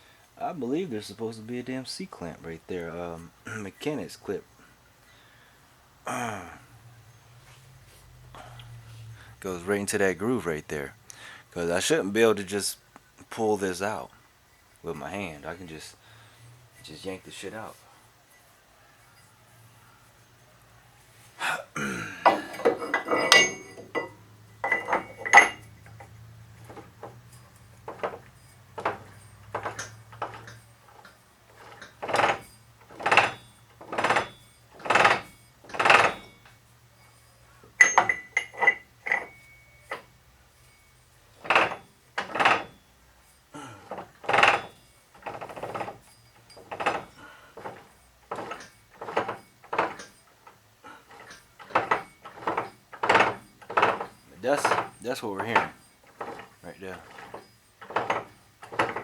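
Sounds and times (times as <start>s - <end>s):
metal rattle: 22.2s - 59.0s
metal axle shaft knocking: 22.3s - 42.9s, 43.9s - 59.0s.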